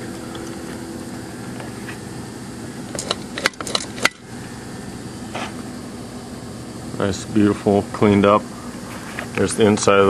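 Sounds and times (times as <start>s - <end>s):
low background hum: 0.0s - 10.0s
sharp clicks and knocks: 2.9s - 4.2s.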